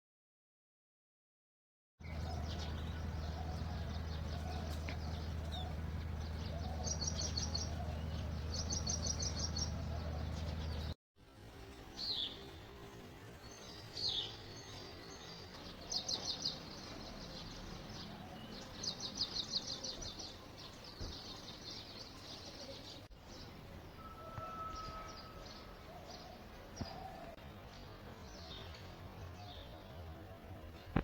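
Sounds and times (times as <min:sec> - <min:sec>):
small birds chirping: 0:02.0 - 0:11.0, 0:11.8 - 0:31.0
faint outdoor background noise: 0:02.0 - 0:31.0
bird trills: 0:24.0 - 0:27.3.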